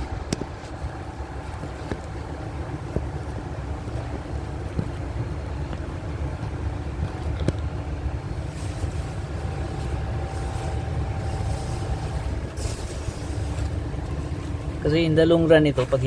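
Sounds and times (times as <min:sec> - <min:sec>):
engine idling: 0:00.0 - 0:16.0.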